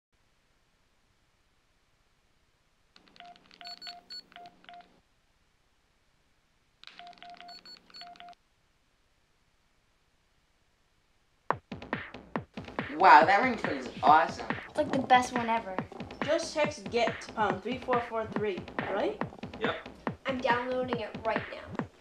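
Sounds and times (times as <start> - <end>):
key clicks: 3.0 - 4.9, 6.8 - 8.4
phone keypad beeping: 3.2 - 4.9, 7.0 - 8.4.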